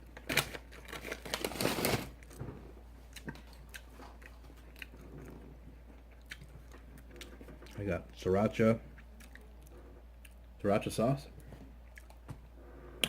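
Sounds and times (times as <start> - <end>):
chewing: 3.1 - 7.8, 8.9 - 10.5, 11.8 - 12.2.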